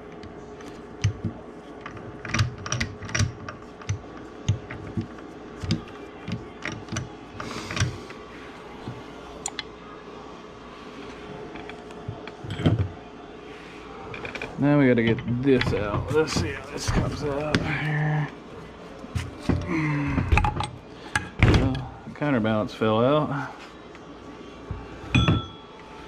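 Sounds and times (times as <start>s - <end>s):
faint steady hum: 0.0s - 26.0s
metal clicks and knocks: 0.6s - 7.1s.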